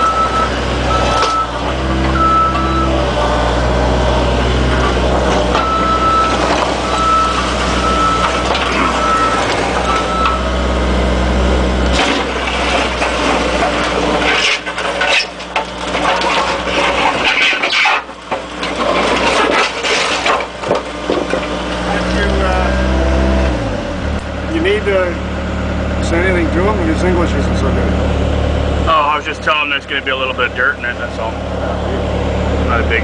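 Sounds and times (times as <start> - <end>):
motion alarm beeping: 0.0 - 3.0, 5.6 - 10.6
excavator diesel engine running: 0.0 - 33.0
knocks and clattering: 11.9 - 21.6.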